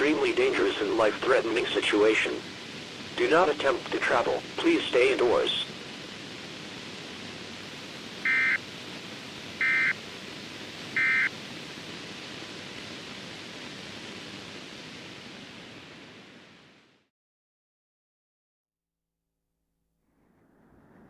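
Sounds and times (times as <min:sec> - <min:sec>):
static hiss: 0:00.0 - 0:17.1
short data bursts: 0:07.7 - 0:11.9.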